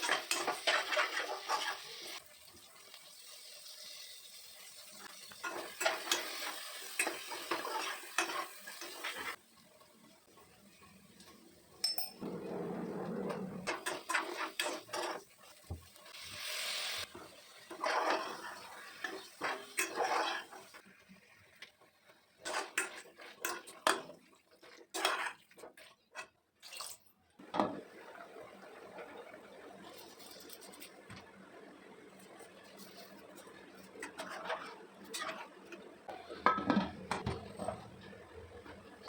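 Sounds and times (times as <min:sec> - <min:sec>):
utensils clinking against pots: 0:00.0 - 0:02.2, 0:05.3 - 0:09.4, 0:11.2 - 0:12.3, 0:13.6 - 0:15.2, 0:17.7 - 0:20.7, 0:22.4 - 0:24.1, 0:34.0 - 0:38.2.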